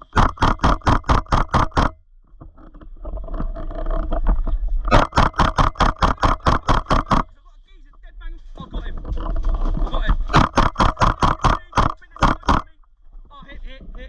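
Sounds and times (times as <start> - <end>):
rapid sharp clacks: 0.0 - 2.0, 4.9 - 7.4, 10.0 - 12.8
rough rumbling noise: 0.0 - 14.0.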